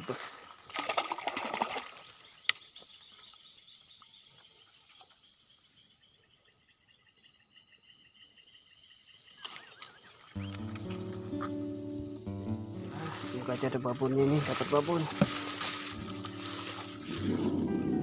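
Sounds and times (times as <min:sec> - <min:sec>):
crickets chirping: 0:00.0 - 0:18.0
music: 0:10.3 - 0:18.0.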